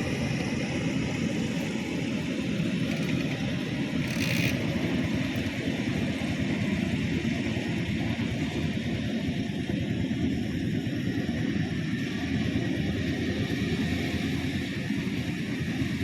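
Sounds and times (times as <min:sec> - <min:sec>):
combine harvester engine running: 0:00.0 - 0:11.2.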